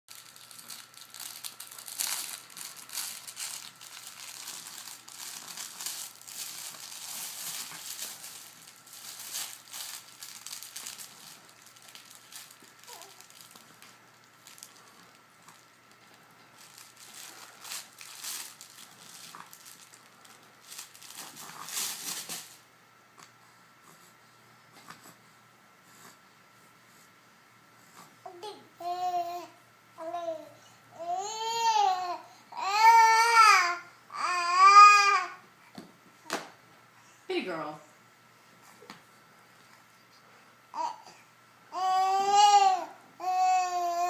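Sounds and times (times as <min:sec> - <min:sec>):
crinkling and rustling: 0:00.1 - 0:22.6.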